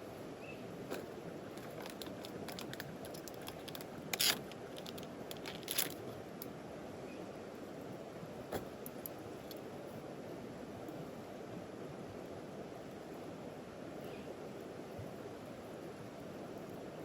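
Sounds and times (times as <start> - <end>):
crunching rustles: 0.8 - 6.2.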